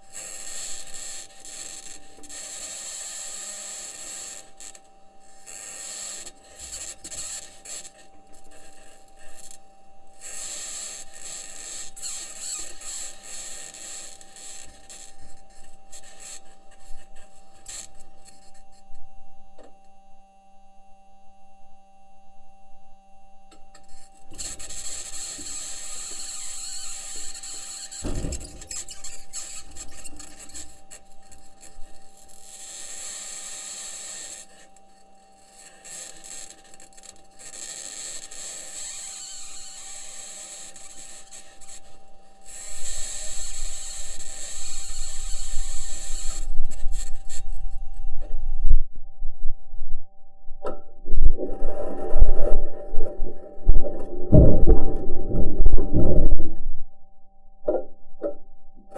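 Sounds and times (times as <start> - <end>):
faint steady tone: 0.0 - 58.9
low thump: 28.0 - 28.6, 53.8 - 56.7
heavy low rumble: 46.6 - 57.1.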